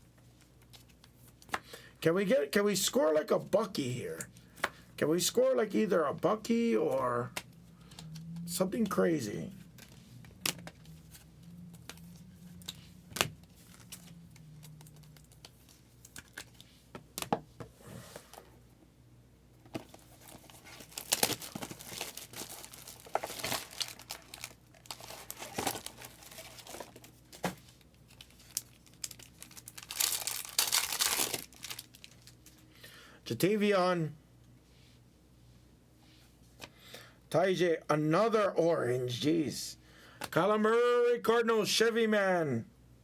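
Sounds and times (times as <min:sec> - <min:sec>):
card pack wrappers crinkling: 0:08.7 - 0:17.3, 0:19.8 - 0:32.6.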